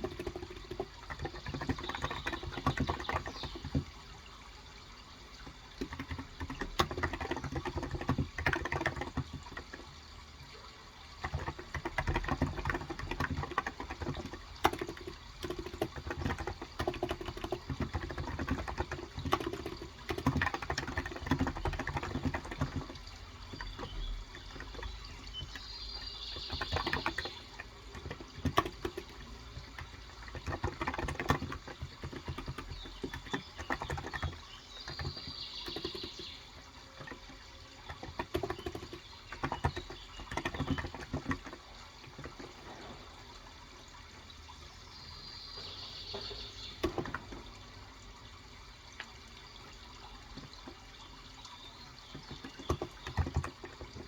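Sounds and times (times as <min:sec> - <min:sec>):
bird chirp: 0:00.0 - 0:03.9, 0:11.3 - 0:37.2, 0:37.9 - 0:41.6, 0:44.8 - 0:47.5
soft keyboard typing: 0:00.0 - 0:04.1, 0:04.7 - 0:42.9, 0:46.1 - 0:47.6, 0:48.9 - 0:54.0
running water: 0:00.0 - 0:54.0.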